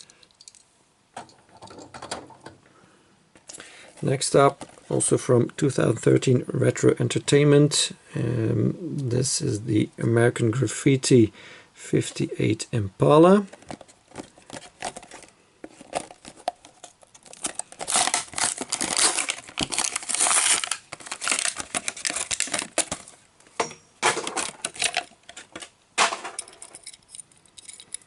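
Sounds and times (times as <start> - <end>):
plastic packaging crinkling and tearing: 13.5 - 23.2, 24.3 - 25.7.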